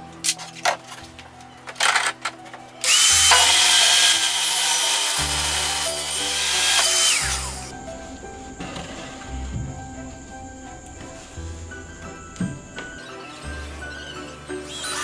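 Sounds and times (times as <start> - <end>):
power tool motor whine: 2.8 - 7.7, 13.0 - 15.0.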